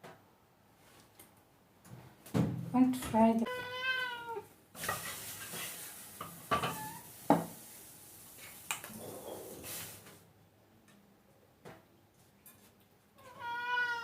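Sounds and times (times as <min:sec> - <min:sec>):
onions sizzling in oil: 0:04.8 - 0:08.7.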